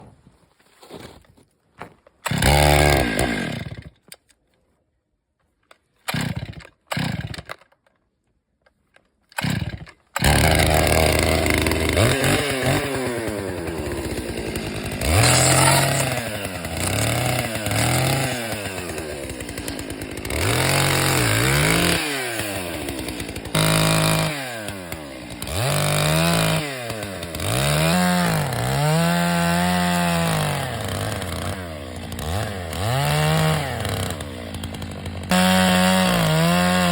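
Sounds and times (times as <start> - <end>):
chainsaw cutting wood: 2.2 - 4.3, 6.1 - 7.8, 9.3 - 36.9.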